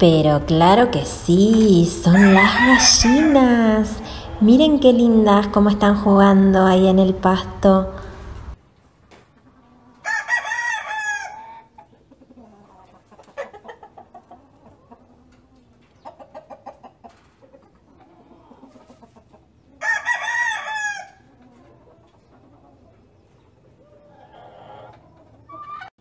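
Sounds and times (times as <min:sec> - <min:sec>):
rooster crowing: 0:02.0 - 0:03.8, 0:10.0 - 0:11.7, 0:19.8 - 0:21.2
chickens clucking: 0:06.8 - 0:26.0.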